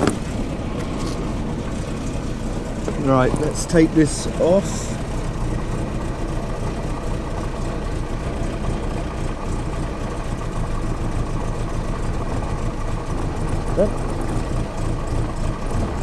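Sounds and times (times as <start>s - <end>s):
engine idling rough with misfire: 0.0s - 16.0s.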